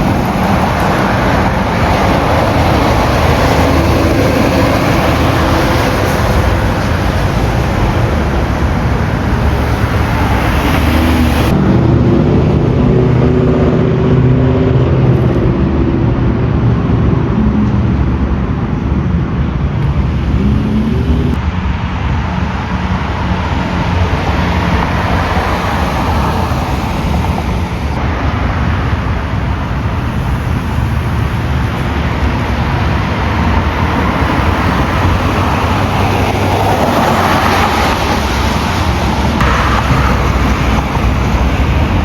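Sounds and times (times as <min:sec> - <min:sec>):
road traffic hiss: 0:00.0 - 0:11.8, 0:18.7 - 0:42.0
low engine rumble: 0:00.0 - 0:42.0.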